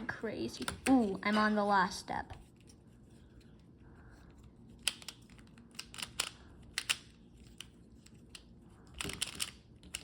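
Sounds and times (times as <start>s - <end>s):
puzzle cube plastic clicks: 4.7s - 10.0s.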